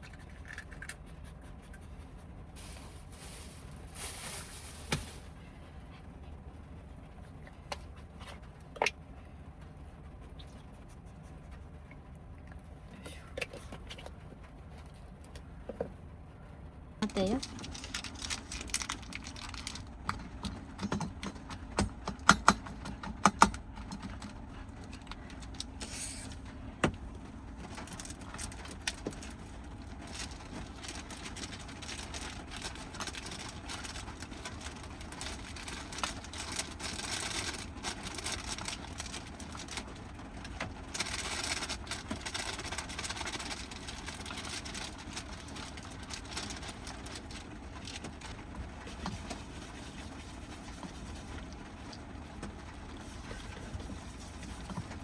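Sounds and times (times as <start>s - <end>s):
rain on a vehicle roof: 17.0s - 55.0s.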